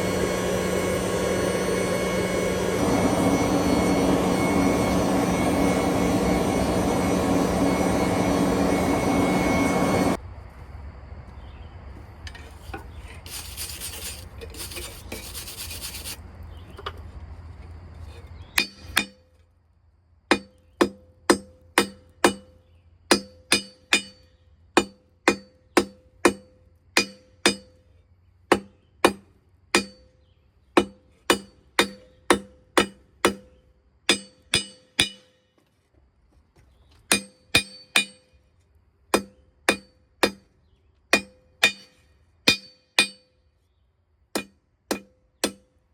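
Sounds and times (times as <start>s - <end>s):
forge burner roaring: 0.0s - 10.2s
hammer ringing on anvil: 23.1s - 27.7s, 29.8s - 30.1s, 30.8s - 33.5s, 34.1s - 35.4s, 37.1s - 38.3s, 41.2s - 43.3s.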